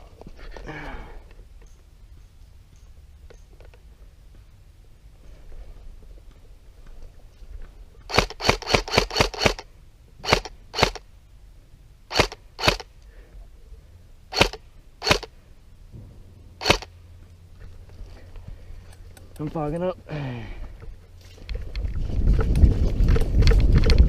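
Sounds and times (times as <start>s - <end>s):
airsoft gun shots: 8.1s - 9.6s, 10.2s - 11.0s, 12.1s - 12.9s, 14.3s - 15.3s, 16.0s - 16.9s.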